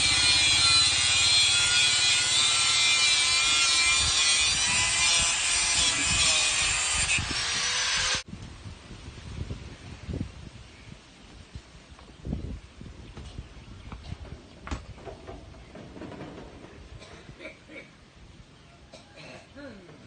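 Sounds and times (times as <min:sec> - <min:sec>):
power saw cutting wood: 0:00.0 - 0:08.2.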